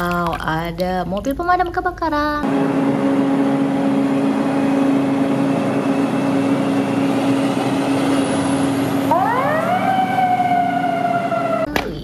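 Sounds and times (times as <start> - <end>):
motor humming steadily: 2.4 - 12.0.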